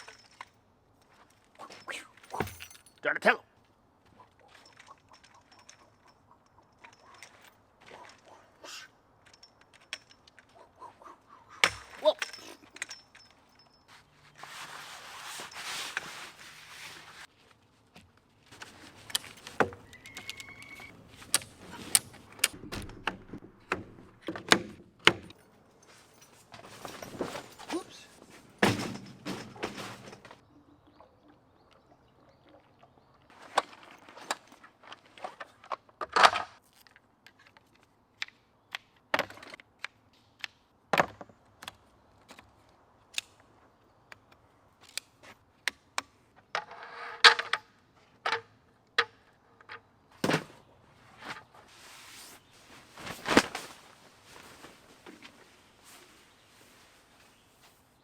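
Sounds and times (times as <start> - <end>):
camping gear clicks and knocks: 0.0 - 3.0, 3.6 - 30.5, 33.3 - 58.0
rustle: 3.6 - 22.6, 25.3 - 30.5, 49.6 - 58.0.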